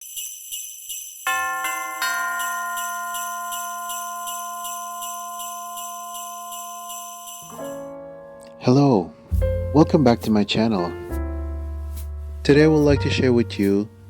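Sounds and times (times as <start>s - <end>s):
sleigh bells shaken: 0.0s - 7.9s.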